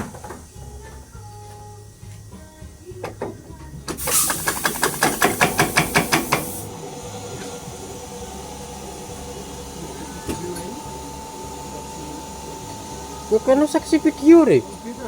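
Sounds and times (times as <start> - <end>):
engine puffing air in hissing pulses: 3.8 - 15.0
steady low hum: 5.2 - 15.0.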